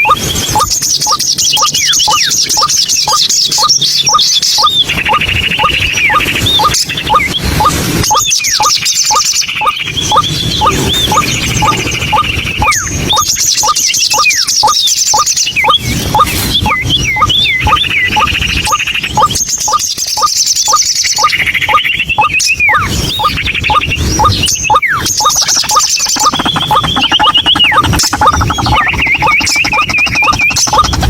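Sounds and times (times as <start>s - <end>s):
bird chattering: 0.0s - 31.0s
falling whistles: 4.6s - 31.0s
waterhen calling: 20.7s - 31.0s.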